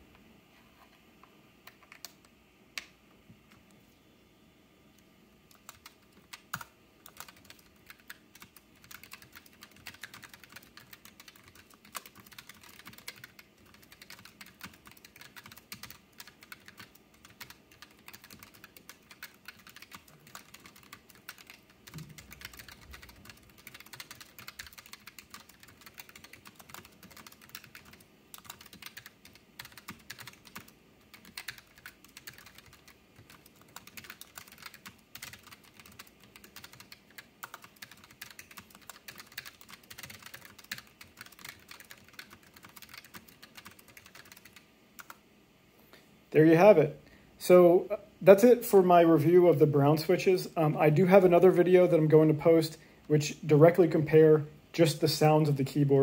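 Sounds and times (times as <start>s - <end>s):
mechanical keyboard typing: 5.5s - 45.2s.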